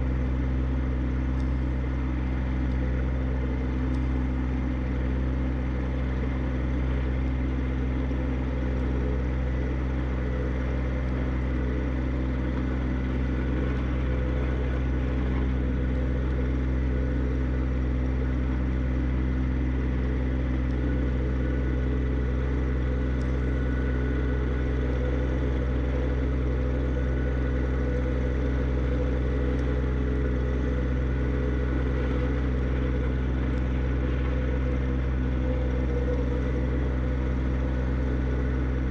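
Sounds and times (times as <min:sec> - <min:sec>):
diesel tractor engine running: 0:00.0 - 0:38.9.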